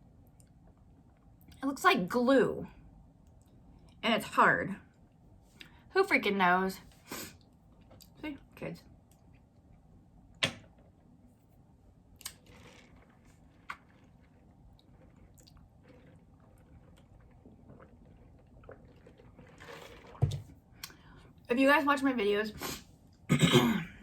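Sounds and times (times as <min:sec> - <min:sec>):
person chewing food: 0:12.2 - 0:20.2.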